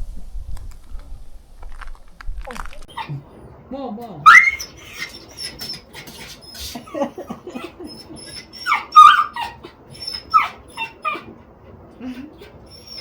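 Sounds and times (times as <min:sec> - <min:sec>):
dog whining: 0:02.9 - 0:03.5, 0:04.2 - 0:11.4, 0:12.0 - 0:13.0.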